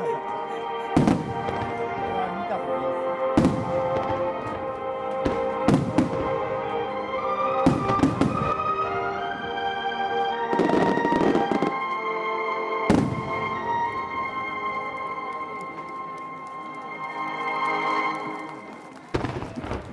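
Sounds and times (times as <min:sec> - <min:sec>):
fireworks crackling: 0:00.0 - 0:19.9
music: 0:00.0 - 0:19.9
fireworks bangs: 0:00.2 - 0:02.5, 0:03.4 - 0:09.4, 0:10.1 - 0:11.9, 0:12.8 - 0:14.5, 0:19.0 - 0:19.9.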